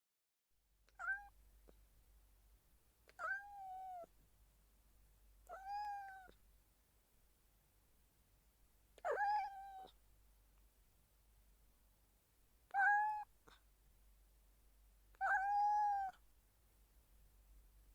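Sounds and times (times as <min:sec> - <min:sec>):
cat meowing softly: 0:00.9 - 0:01.4, 0:03.1 - 0:04.1, 0:05.4 - 0:06.4, 0:09.0 - 0:10.0, 0:12.7 - 0:13.6, 0:15.1 - 0:16.2.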